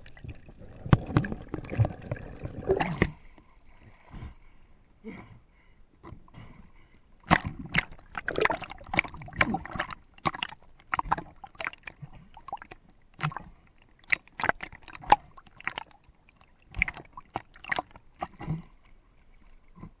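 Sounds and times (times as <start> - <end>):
water sloshing and splashing: 0.0 - 4.3, 7.2 - 20.0.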